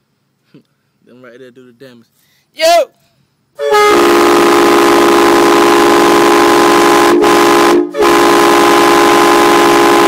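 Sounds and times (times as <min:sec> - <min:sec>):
loud train horn chord: 0:03.6 - 0:10.0.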